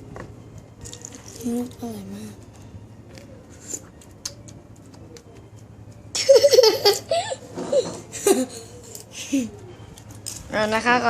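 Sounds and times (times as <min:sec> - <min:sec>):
woman laughing: 0:06.2 - 0:08.8.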